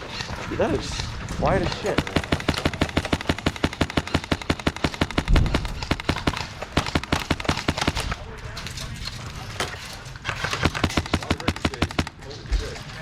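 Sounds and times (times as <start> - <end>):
airsoft gun firing rapid shots: 1.7 - 8.2, 10.6 - 12.2.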